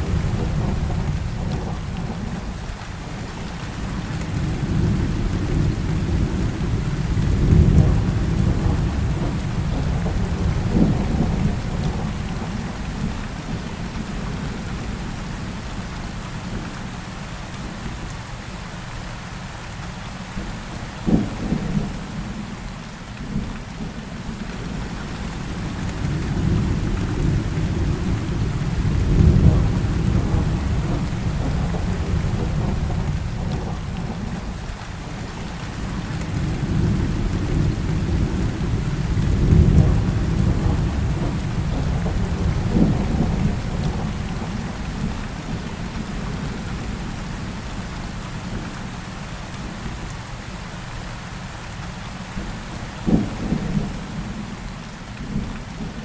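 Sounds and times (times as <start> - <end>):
heavy rain falling: 0.0 - 56.0
rolling thunder: 3.9 - 13.6, 24.7 - 47.5.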